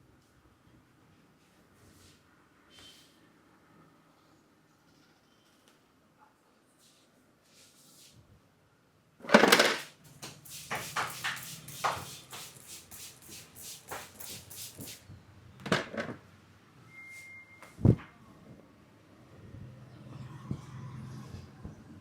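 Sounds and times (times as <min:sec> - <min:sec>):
hands slapping and patting: 0:10.2 - 0:15.0.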